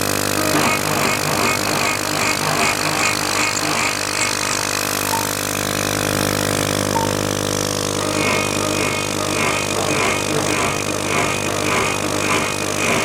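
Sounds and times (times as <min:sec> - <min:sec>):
machine motor hum: 0:00.0 - 0:13.0
pulsing beeping tone: 0:05.0 - 0:05.5, 0:06.7 - 0:07.3.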